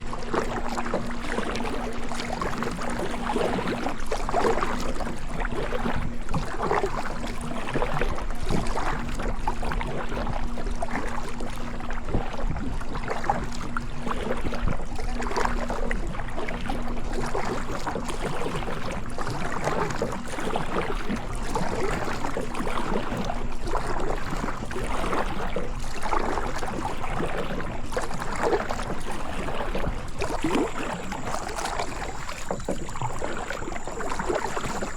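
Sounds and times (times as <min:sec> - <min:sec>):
paddle strokes swishing through water: 0:00.0 - 0:34.9
water rushing: 0:25.8 - 0:34.9
faint steady hum: 0:27.7 - 0:34.9.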